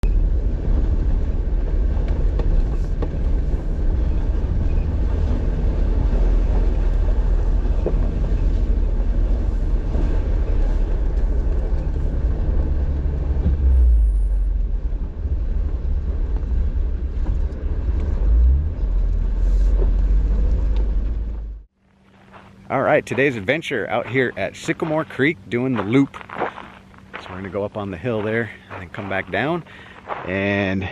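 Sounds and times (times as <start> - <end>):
engine and tyres rumbling: 0.0 - 30.9.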